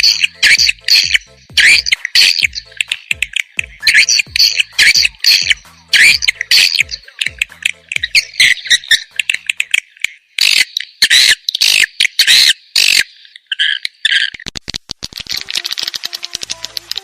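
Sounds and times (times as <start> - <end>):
quick series of clicks: 0.0 - 10.2, 14.3 - 17.0
swiftlets twittering and chirping: 0.0 - 17.0.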